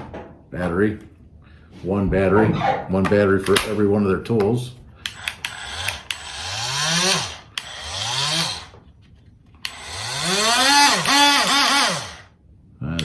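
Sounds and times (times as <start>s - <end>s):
multitool motor whirring: 5.1s - 8.8s, 9.6s - 12.3s.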